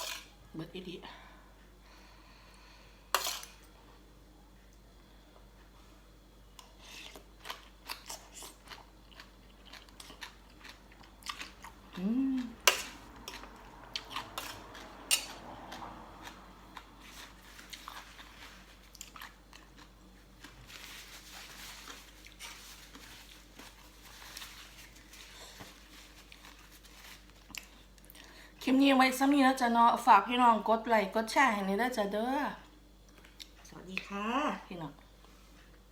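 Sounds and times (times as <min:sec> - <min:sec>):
chewing and biting food: 0:07.0 - 0:20.9
low hum-like vocal sound: 0:11.8 - 0:16.7.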